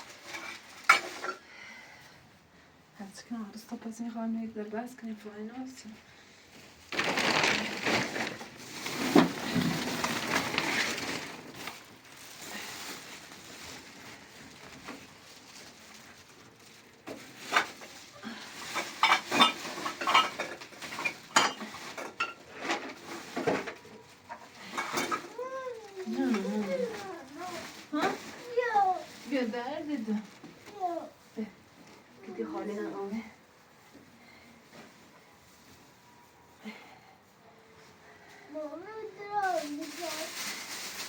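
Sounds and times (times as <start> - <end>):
rustling noise: 3.1 - 36.6, 37.2 - 41.0.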